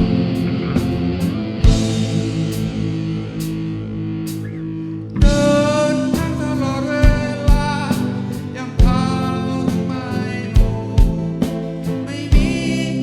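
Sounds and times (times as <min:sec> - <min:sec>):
cymbal strokes: 0:00.0 - 0:08.7
drum kit playing: 0:00.0 - 0:12.8
bass guitar: 0:00.0 - 0:13.0
electric guitar: 0:00.0 - 0:13.0
lead melody line: 0:00.0 - 0:13.0.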